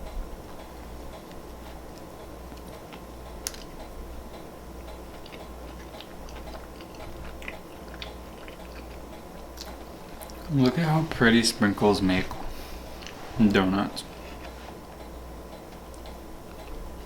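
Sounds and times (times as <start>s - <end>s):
wet chewing mouth clicks: 5.1s - 10.5s.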